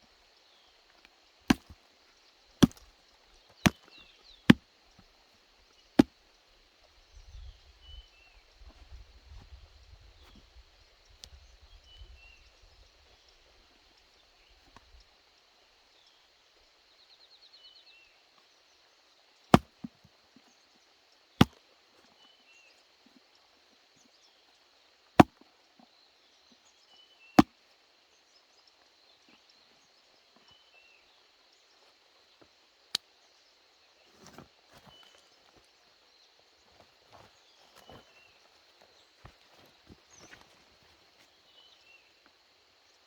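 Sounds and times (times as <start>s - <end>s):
sharp chopping strikes: 1.5s - 1.8s, 2.6s - 2.8s.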